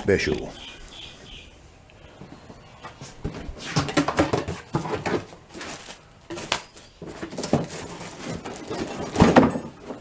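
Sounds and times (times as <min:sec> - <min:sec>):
knocks and clatters of handling: 0:02.2 - 0:10.0.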